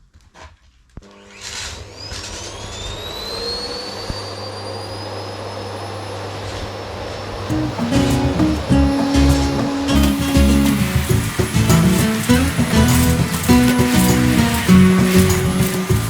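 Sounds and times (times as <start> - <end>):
vacuum cleaner motor whine: 1.0 - 16.0
guitar music: 7.5 - 16.0.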